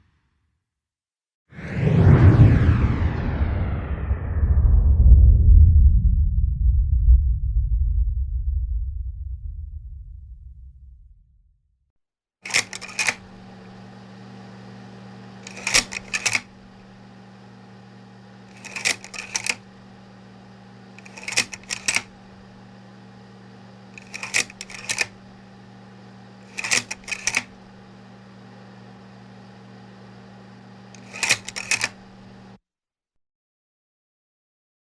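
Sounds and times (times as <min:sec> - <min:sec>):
sharp mechanical clicks: 0:12.4 - 0:13.9, 0:15.4 - 0:17.1, 0:18.4 - 0:20.0, 0:20.9 - 0:29.7, 0:30.8 - 0:32.6
steady low hum: 0:12.5 - 0:32.6.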